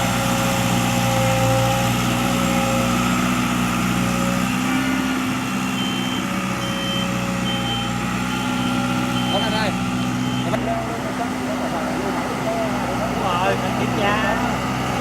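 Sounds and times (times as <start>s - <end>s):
vehicle engine running: 0.0s - 15.0s
short high beeps: 5.7s - 10.6s.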